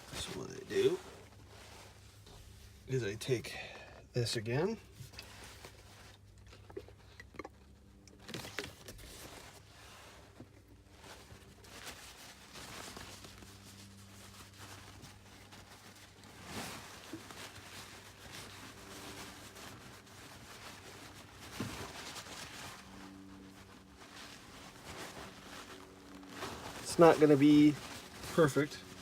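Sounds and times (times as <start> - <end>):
paper towel rubbing: 9.2 - 29.0.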